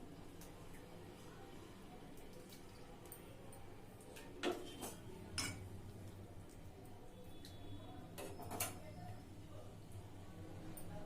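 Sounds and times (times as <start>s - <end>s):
utensils clinking against pot: 4.4s - 5.7s.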